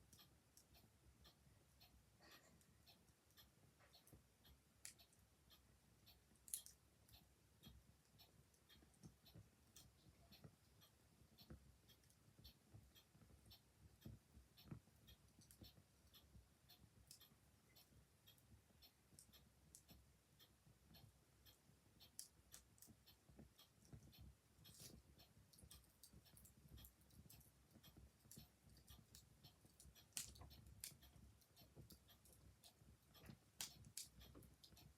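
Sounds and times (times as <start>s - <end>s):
mechanical clock ticking: 0.0s - 34.9s
wood fire crackling and popping: 30.1s - 31.0s.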